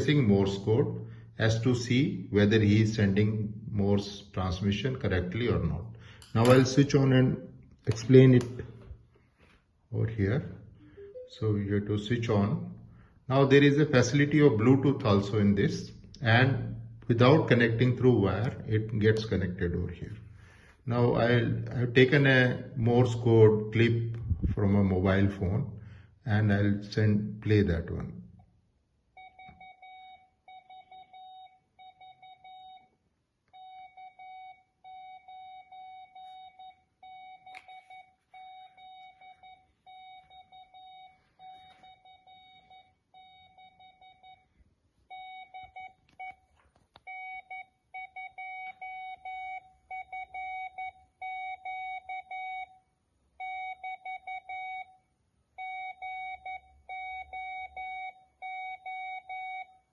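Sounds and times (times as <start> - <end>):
morse code beeps: 10.4 - 12.0, 29.2 - 52.8, 53.4 - 55.0, 55.6 - 59.9.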